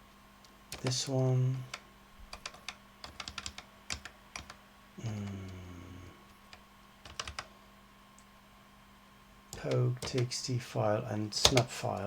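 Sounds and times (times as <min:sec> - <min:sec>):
computer keys clicking: 0:00.7 - 0:01.0, 0:01.7 - 0:04.6, 0:06.5 - 0:07.5, 0:09.5 - 0:10.3, 0:11.4 - 0:12.0.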